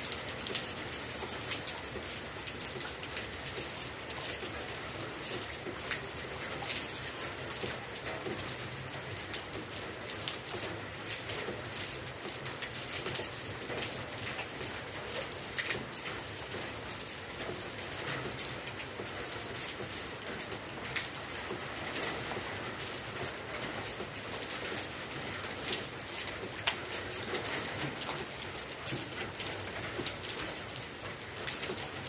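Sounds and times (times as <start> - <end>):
raindrops ticking on surfaces: 0.0 - 32.0
steady rain falling: 0.0 - 32.0.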